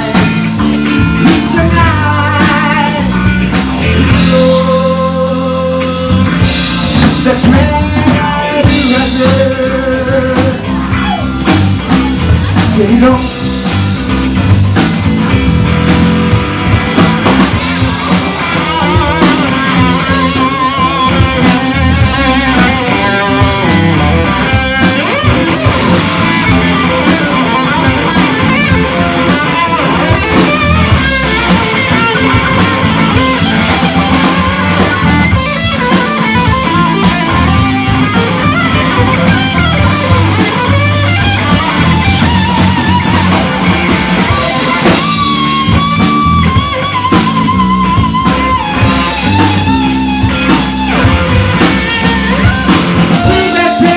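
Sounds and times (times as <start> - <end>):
bass guitar: 0.0 - 53.9
drum kit: 0.0 - 53.9
lead guitar: 0.0 - 53.9.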